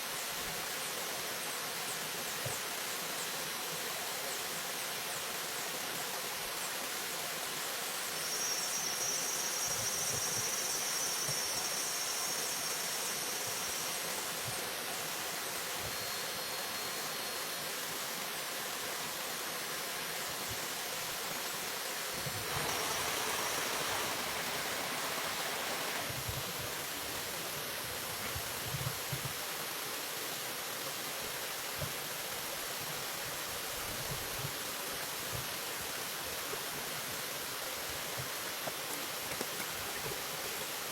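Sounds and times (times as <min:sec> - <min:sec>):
flowing water: 0:00.0 - 0:40.9
insect buzzing trill: 0:08.2 - 0:14.1.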